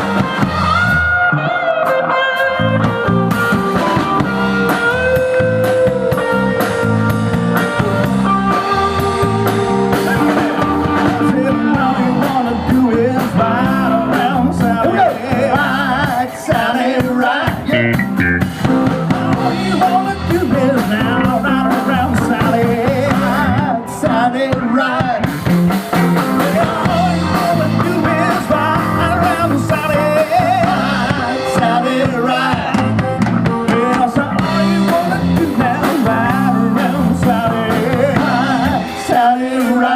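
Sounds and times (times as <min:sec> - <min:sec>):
drum kit: 0:00.0 - 0:39.9
electric guitar: 0:00.0 - 0:39.9
rock band playing: 0:00.0 - 0:39.9.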